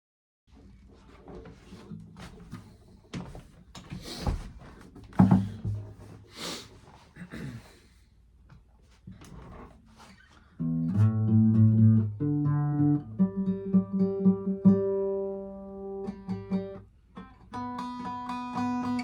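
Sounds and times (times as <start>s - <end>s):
plucked string instrument: 10.6s - 19.0s.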